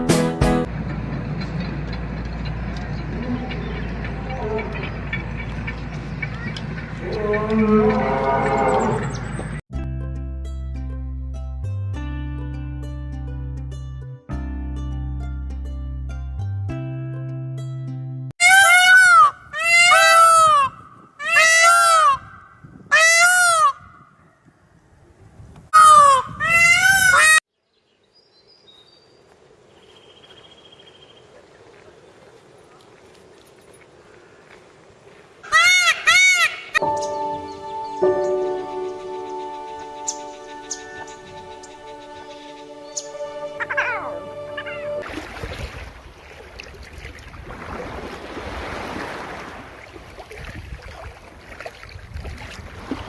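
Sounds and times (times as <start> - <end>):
goose honking: 18.4 - 22.3, 22.9 - 23.8, 43.0 - 45.0
wind buffeting microphone: 22.2 - 23.0, 23.7 - 27.2, 45.3 - 53.0
rushing water: 44.6 - 53.0.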